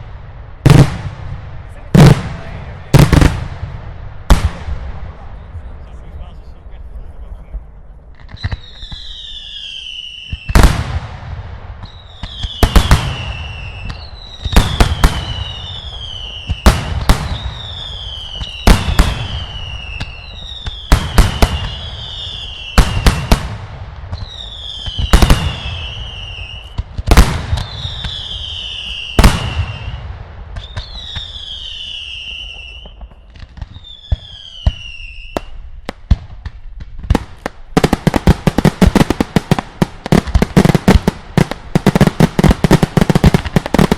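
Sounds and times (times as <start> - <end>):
loud firework bangs: 0.0 - 5.5, 8.2 - 43.9
firework whistle falling in pitch: 30.6 - 35.4.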